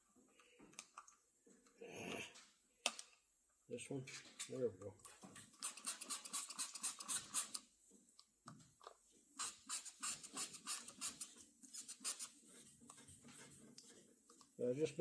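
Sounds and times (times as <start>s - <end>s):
hand sanding with wet sandpaper: 5.5s - 7.6s, 9.4s - 14.9s.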